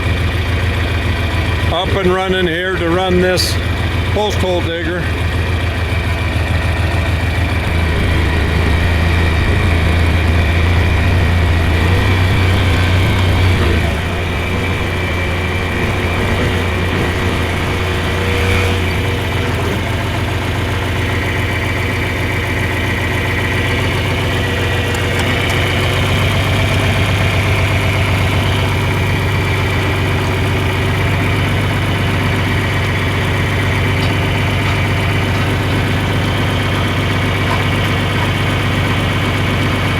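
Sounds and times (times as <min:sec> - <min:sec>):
tractor engine running: 0:00.0 - 0:39.9
high whine: 0:07.5 - 0:20.6.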